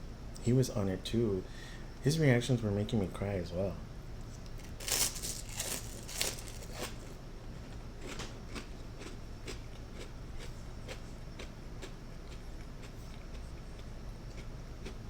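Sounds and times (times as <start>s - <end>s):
crunchy chewing: 4.4s - 15.0s.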